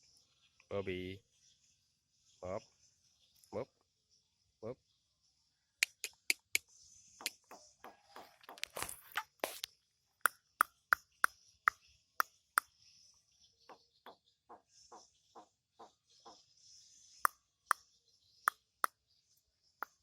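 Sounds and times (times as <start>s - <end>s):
bird clicking calls: 5.8s - 6.6s, 7.2s - 9.7s, 10.3s - 12.7s.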